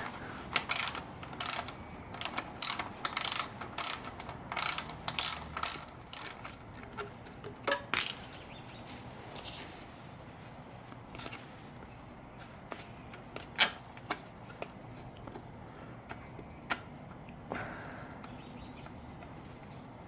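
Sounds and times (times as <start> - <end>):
socket wrench ratchet clicking: 0.6 - 6.5.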